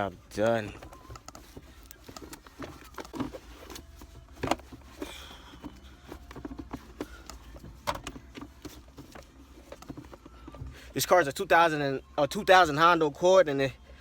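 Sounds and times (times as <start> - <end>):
cloth rubbing plastic: 0.0 - 11.6
taps and clicks on plastic: 0.4 - 10.8.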